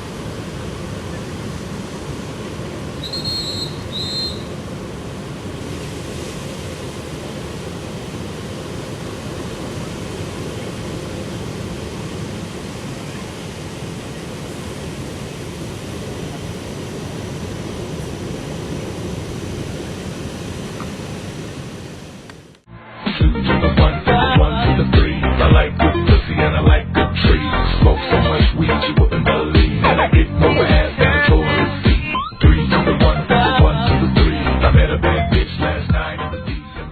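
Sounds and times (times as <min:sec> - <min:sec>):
ocean surf breaking: 0:00.0 - 0:22.7
high whistle-like tones: 0:03.0 - 0:04.5.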